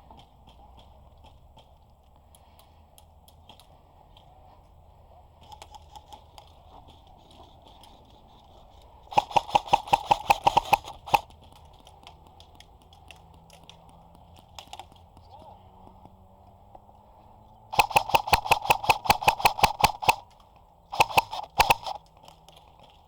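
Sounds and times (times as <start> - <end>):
airsoft gun shots: 9.1 - 11.3, 17.7 - 20.3, 20.9 - 22.0.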